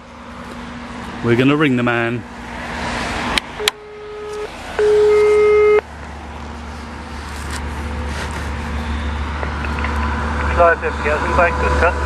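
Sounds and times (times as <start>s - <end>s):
telephone ringback beeps: 3.6s - 5.8s.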